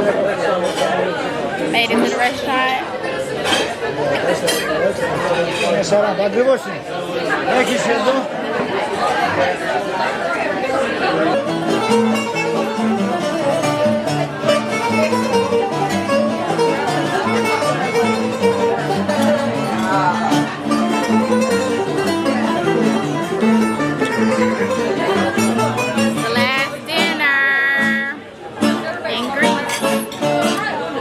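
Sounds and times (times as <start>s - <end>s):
plucked string music: 11.2s - 31.0s.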